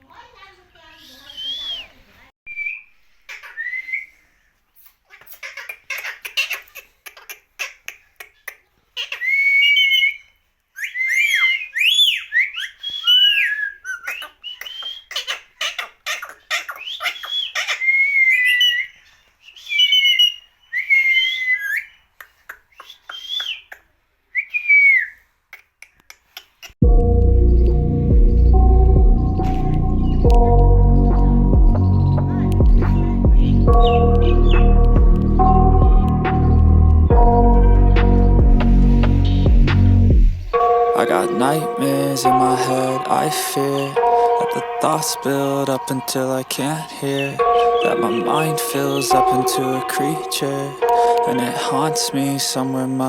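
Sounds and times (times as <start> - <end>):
parrot whistling and chattering: 1.0 - 4.2, 4.8 - 25.2, 31.9 - 34.9.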